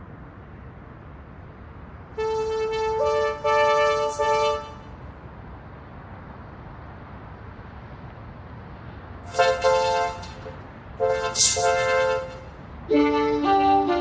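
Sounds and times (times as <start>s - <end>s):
car horn honking: 2.2s - 4.8s, 9.3s - 12.4s
low hiss: 9.3s - 12.5s.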